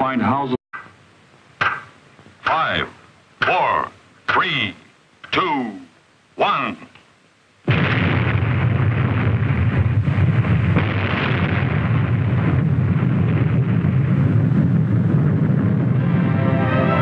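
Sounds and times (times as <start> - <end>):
sharp cracks: 1.6 - 3.7
explosion rumbling roar: 7.7 - 17.0.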